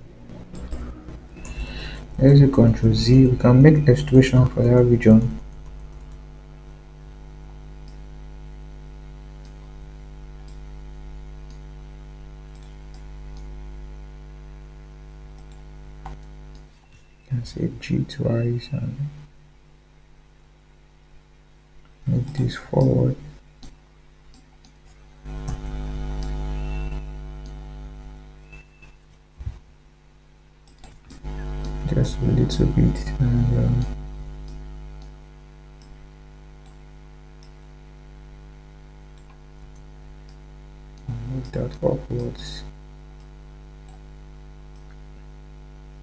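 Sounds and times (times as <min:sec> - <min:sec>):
electrical mains hum: 0:00.0 - 0:46.0
faint clicks: 0:07.8 - 0:08.0, 0:10.4 - 0:10.7, 0:11.4 - 0:11.7, 0:12.5 - 0:13.5, 0:15.3 - 0:16.8, 0:23.6 - 0:27.6, 0:30.6 - 0:31.8, 0:33.8 - 0:35.2, 0:35.8 - 0:36.0, 0:36.6 - 0:36.8, 0:37.4 - 0:37.7, 0:39.2 - 0:42.4, 0:44.7 - 0:45.0.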